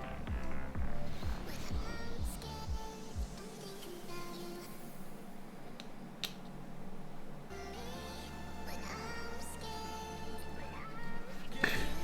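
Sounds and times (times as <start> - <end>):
background music with beat: 0.0 - 4.7.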